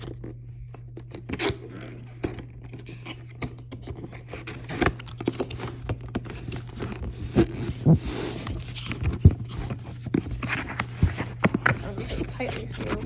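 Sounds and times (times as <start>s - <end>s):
low steady hum: 0.0s - 13.0s
cardboard box scraping and rustling: 3.9s - 13.0s.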